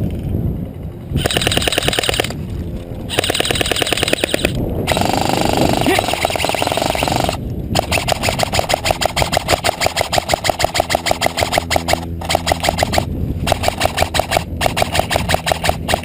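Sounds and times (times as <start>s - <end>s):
motor whine: 1.0s - 16.0s
airsoft gun firing full auto: 1.2s - 2.4s, 3.1s - 16.0s.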